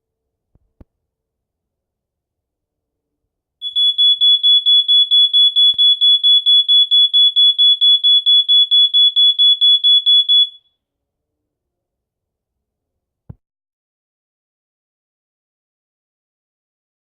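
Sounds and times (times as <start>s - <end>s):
smoke detector alarm beeping: 3.6s - 10.6s.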